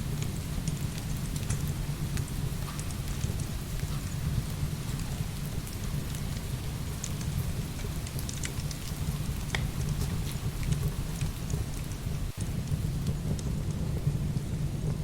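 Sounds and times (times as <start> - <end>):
firewood crackling and popping: 0.0 - 15.0
heavy rain pouring: 0.0 - 15.0.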